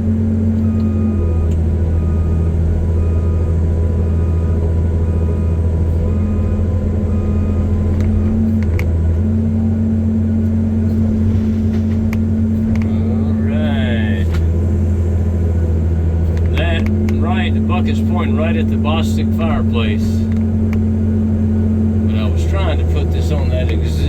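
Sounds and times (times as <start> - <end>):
diesel excavator engine running hard: 0.0 - 24.0
faint beeping: 0.7 - 8.7.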